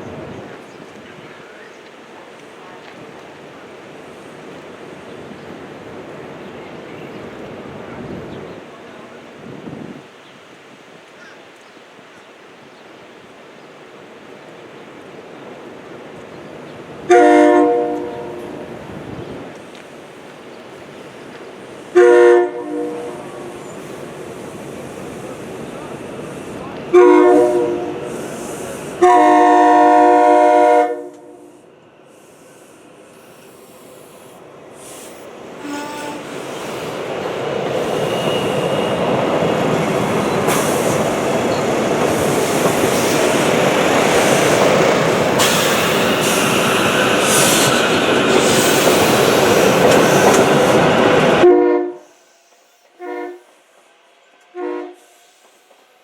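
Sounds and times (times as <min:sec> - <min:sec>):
train passing on rails: 0:00.0 - 0:56.0
train horn blasts: 0:17.1 - 0:18.7, 0:21.9 - 0:23.6, 0:26.9 - 0:28.1, 0:29.0 - 0:31.6, 0:35.6 - 0:36.8, 0:51.4 - 0:55.4
short horn toots: 0:35.6 - 0:36.4, 0:52.9 - 0:53.5, 0:54.5 - 0:55.2.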